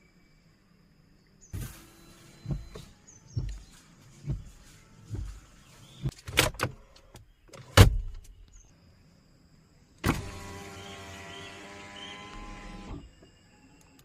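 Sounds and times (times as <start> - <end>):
car mechanism clicks and knocks: 2.4 - 4.5, 5.1 - 8.6
electric motor hum: 10.0 - 13.6.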